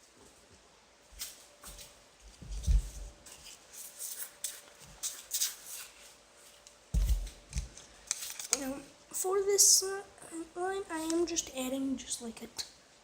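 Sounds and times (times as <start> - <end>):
dull thump: 7.0 - 7.3.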